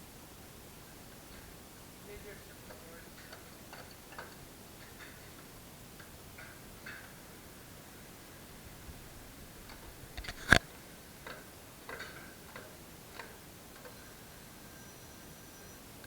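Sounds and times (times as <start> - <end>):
light clicks and taps: 2.2 - 7.1.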